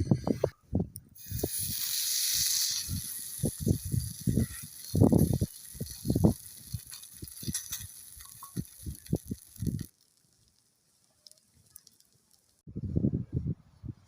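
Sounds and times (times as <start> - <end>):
wind buffeting microphone: 0.0 - 9.9, 12.7 - 14.0
high hiss: 1.2 - 12.6.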